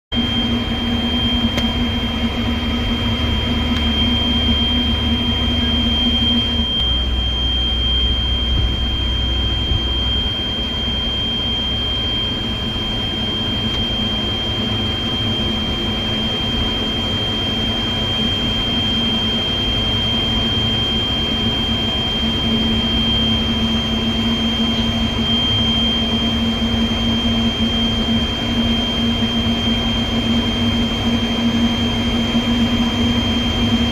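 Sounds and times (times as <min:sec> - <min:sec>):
high-pitched whine: 0:00.1 - 0:33.9
low hum: 0:00.1 - 0:33.9
excavator diesel engine running: 0:00.2 - 0:18.7.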